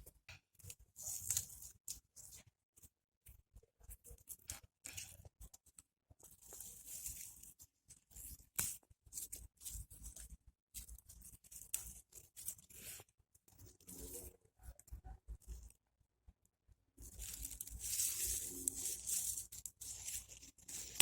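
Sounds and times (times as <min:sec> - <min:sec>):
food preparation rustling and tearing: 0:00.6 - 0:02.5, 0:03.8 - 0:15.7, 0:17.0 - 0:21.0.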